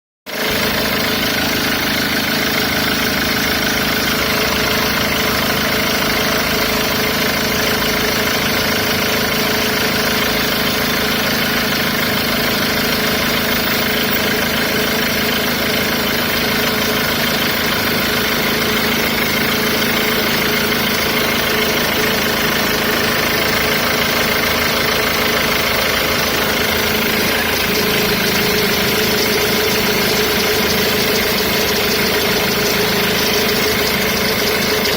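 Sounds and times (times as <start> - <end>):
diesel engine idling: 0.3 - 34.9.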